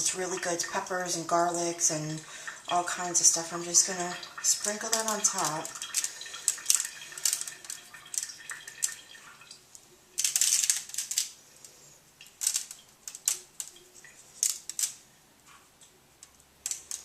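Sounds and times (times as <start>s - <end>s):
seasoning shaker rattling: 3.7s - 9.2s, 10.2s - 15.1s, 16.6s - 17.0s.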